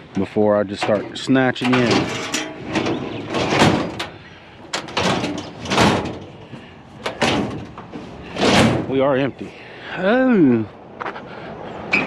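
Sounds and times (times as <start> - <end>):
metal drawers sliding open and shut: 0.7 - 9.0.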